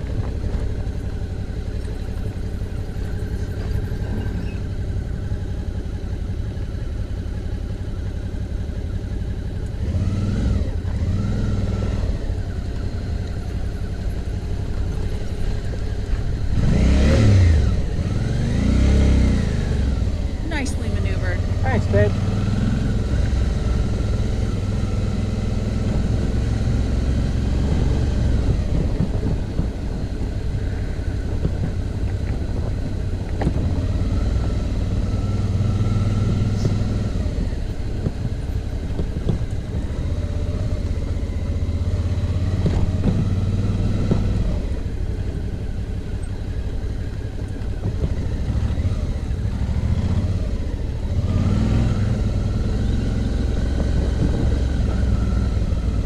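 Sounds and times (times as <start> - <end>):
motorcycle engine revving: 0.0 - 56.0
knocks from rough road: 27.6 - 30.2, 31.2 - 33.8, 36.1 - 40.2, 42.4 - 44.8, 47.6 - 48.8, 53.7 - 55.4.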